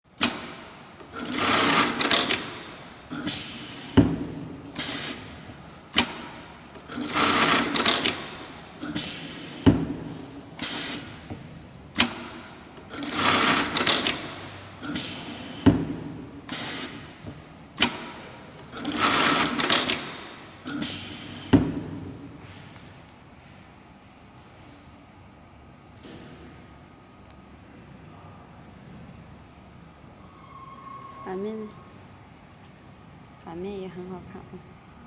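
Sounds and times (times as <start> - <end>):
sewing machine stitching: 0.2 - 2.7, 6.0 - 9.0, 12.9 - 15.1, 17.8 - 21.0.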